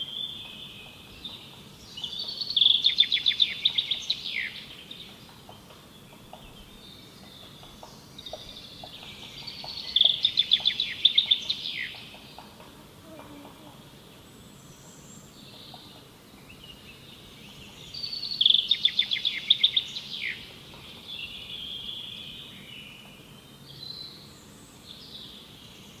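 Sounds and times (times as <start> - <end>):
bird chirps: 0.0 - 12.6
background hiss: 0.0 - 26.0.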